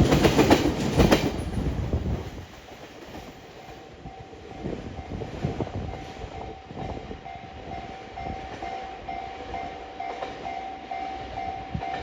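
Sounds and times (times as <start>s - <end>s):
train wheels clacking over joints: 0.0s - 3.8s
train rumble: 0.0s - 12.0s.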